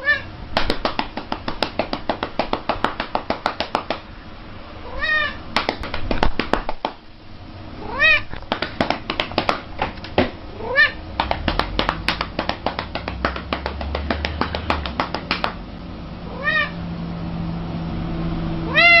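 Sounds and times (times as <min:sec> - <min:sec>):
cat meowing: 0:00.0 - 0:00.3, 0:04.8 - 0:05.4, 0:07.8 - 0:08.4, 0:10.5 - 0:11.0, 0:16.3 - 0:16.8, 0:18.7 - 0:19.0
sharp clicks and taps: 0:05.6 - 0:07.0, 0:08.3 - 0:10.4, 0:11.2 - 0:15.6.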